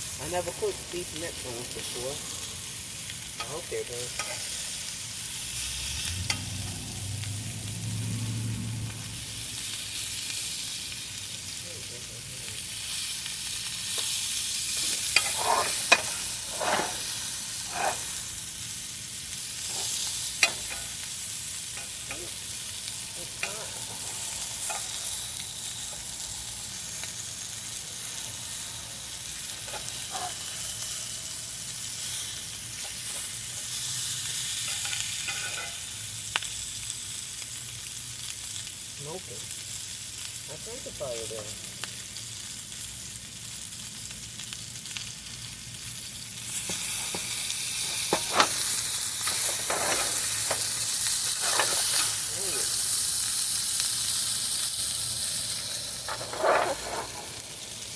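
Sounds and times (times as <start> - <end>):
meat sizzling in a hot pan: 0.0 - 57.9
utensil clinking and scraping pan: 3.4 - 4.7, 14.7 - 18.2, 19.6 - 21.0, 23.2 - 25.2, 29.5 - 30.6, 34.6 - 35.9, 46.7 - 52.3, 55.5 - 57.8.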